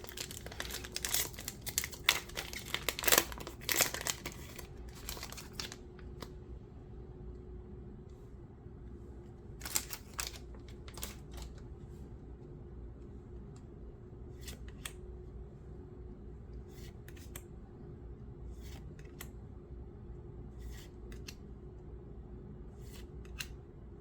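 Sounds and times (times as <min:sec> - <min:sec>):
low steady hum: 0:00.0 - 0:24.0
cards flipping and snapping: 0:14.4 - 0:15.0, 0:22.8 - 0:23.5.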